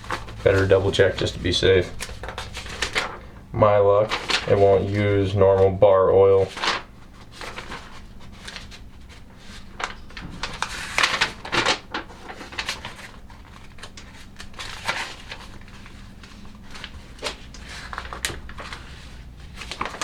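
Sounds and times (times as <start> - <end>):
steady low hum: 0.0 - 8.3
paper rustling: 0.0 - 20.0.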